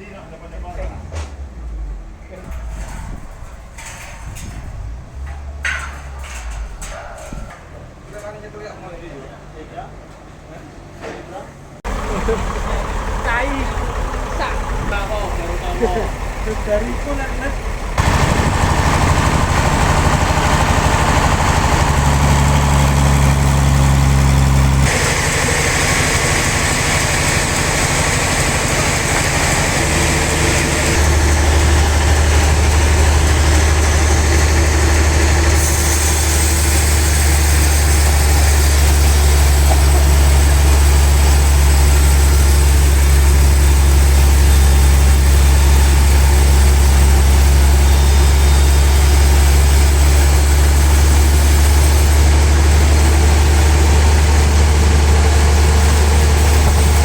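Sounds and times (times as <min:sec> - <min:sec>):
sawmill machinery drone: 0:11.9 - 0:57.0.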